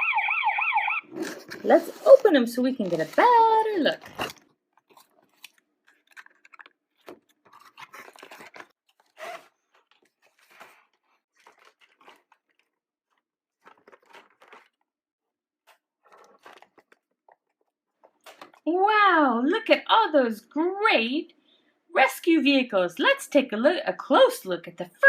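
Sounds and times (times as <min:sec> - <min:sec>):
packaging crunching and tearing: 0:01.0 - 0:14.9, 0:16.0 - 0:18.6.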